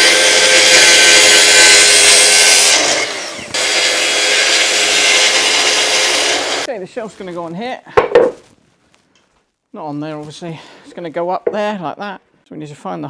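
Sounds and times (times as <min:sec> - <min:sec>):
power saw cutting plywood: 0:00.0 - 0:06.7.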